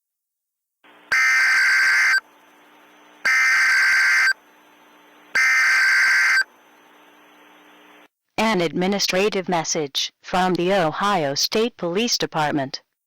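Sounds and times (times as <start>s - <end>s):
buzzing digital data tone: 3.2s - 4.4s.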